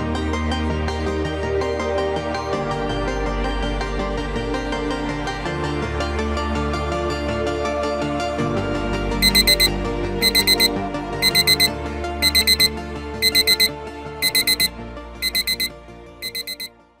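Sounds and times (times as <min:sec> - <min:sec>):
alarm clock beeping: 0:09.2 - 0:16.7.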